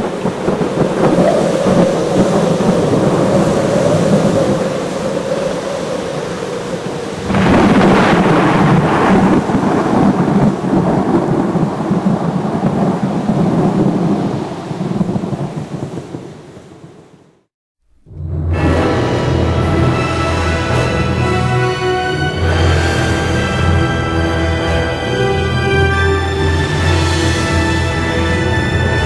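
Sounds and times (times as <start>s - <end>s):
loud thunderclap: 0.0s - 17.1s
thunder rumbling: 0.0s - 17.4s, 18.0s - 29.0s
rain falling: 0.0s - 17.5s, 18.6s - 29.0s.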